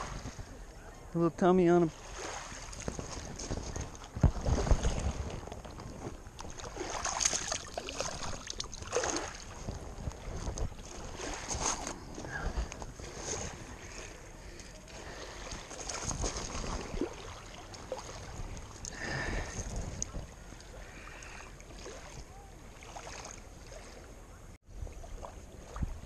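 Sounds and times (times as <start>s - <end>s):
water lapping at shoreline: 0.0s - 26.0s
wind buffeting microphone: 2.1s - 21.6s, 24.7s - 26.0s
microphone handling rustle: 2.7s - 6.6s, 9.6s - 13.6s.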